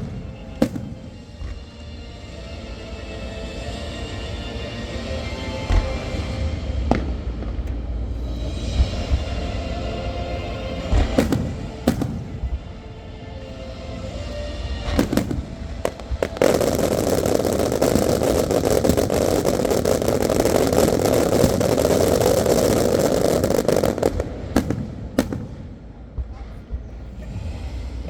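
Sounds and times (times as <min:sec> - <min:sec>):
fireworks sharp bangs: 0:00.0 - 0:01.7, 0:05.7 - 0:12.9, 0:14.8 - 0:27.6
fireworks crackling and banging: 0:00.0 - 0:02.0, 0:05.1 - 0:28.0.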